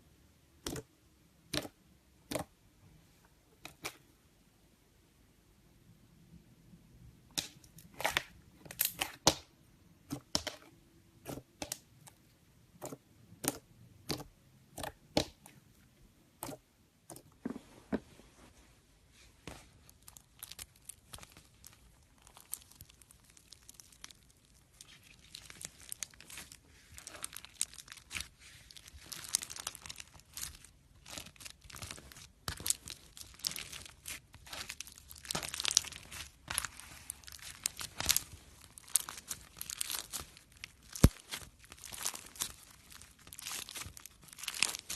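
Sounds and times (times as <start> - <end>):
slime popping and crackling: 7.3 - 9.5, 19.8 - 44.9.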